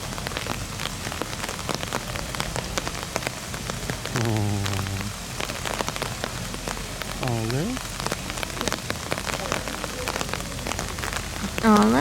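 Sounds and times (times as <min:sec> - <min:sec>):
steady rain: 0:00.0 - 0:12.0
short low voice: 0:04.2 - 0:05.2, 0:07.2 - 0:07.8.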